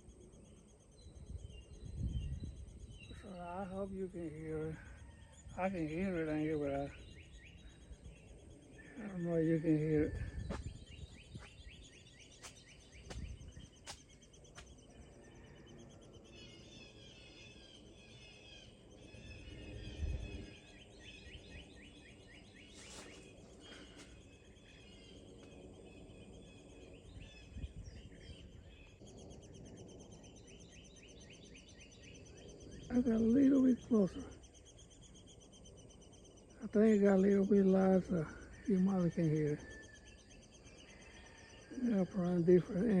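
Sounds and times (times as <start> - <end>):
nestlings chirping: 5.6 - 15.2.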